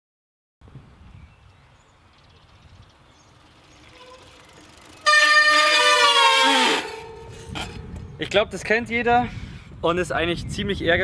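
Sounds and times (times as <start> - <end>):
bicycle rolling noise: 1.0 - 8.7
bicycle disc brake squealing: 3.4 - 8.0.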